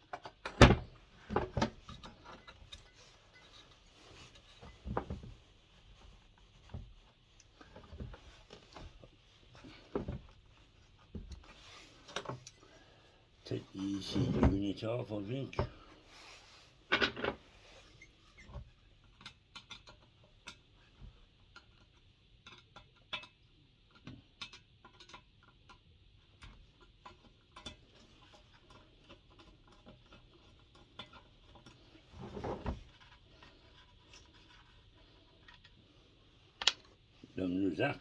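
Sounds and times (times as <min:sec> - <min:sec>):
tools clicking and tapping: 0:19.1 - 0:20.6, 0:21.5 - 0:25.8.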